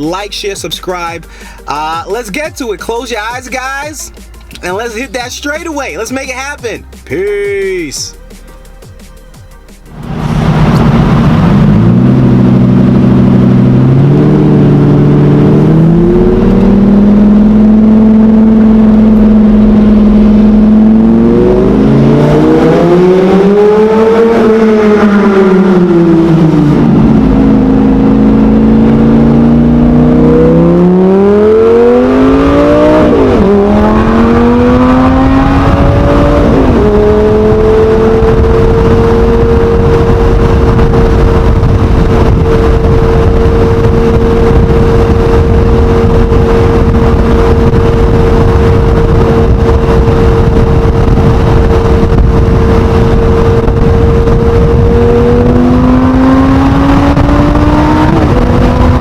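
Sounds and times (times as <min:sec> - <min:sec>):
sports car engine accelerating: 0:00.0 - 0:59.0.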